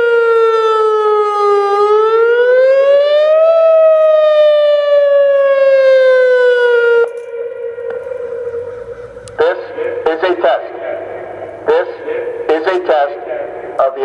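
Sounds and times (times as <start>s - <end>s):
warning siren wailing: 0.0s - 14.0s.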